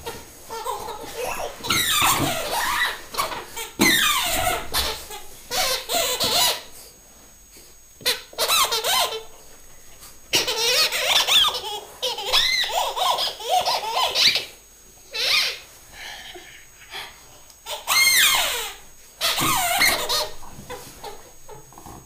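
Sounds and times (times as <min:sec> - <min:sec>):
squeaky pet toy squeaking: 0:01.6 - 0:02.9, 0:03.8 - 0:06.6, 0:17.7 - 0:20.3.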